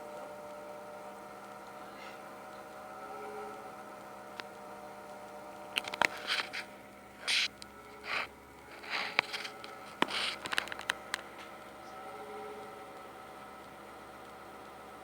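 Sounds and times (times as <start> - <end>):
power supply whine: 0.0 - 15.0
scraping rustles: 5.9 - 11.5.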